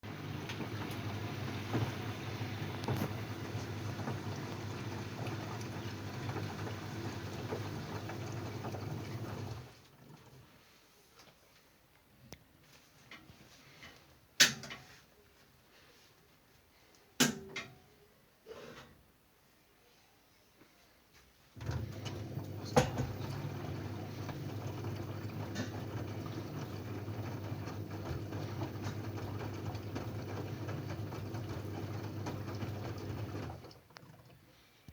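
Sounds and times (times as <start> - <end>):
washing machine drum humming: 0.0 - 10.2, 21.6 - 34.3.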